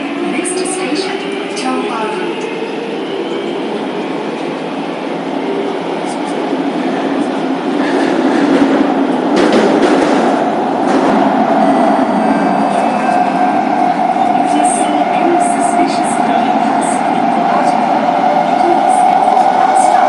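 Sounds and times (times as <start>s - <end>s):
rail joint clicks: 7.7s - 11.7s.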